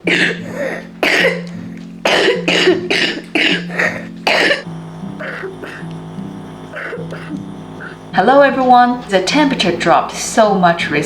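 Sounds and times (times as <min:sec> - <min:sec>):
child coughing: 0:00.0 - 0:04.6, 0:05.2 - 0:05.9, 0:06.7 - 0:07.4
soft background music: 0:00.0 - 0:11.0.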